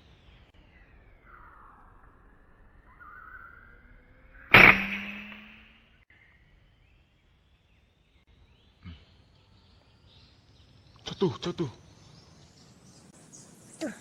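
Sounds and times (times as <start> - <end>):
air rifle shot: 4.5 - 5.7.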